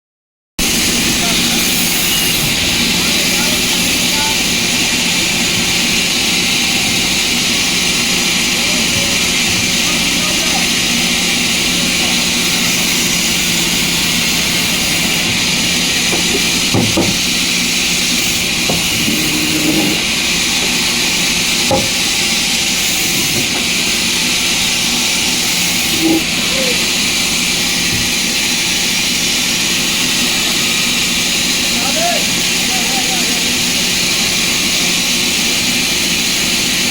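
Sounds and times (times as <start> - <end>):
sawmill machinery whirring: 0.6 - 36.9
knocks of wood: 16.1 - 17.3, 21.7 - 22.0.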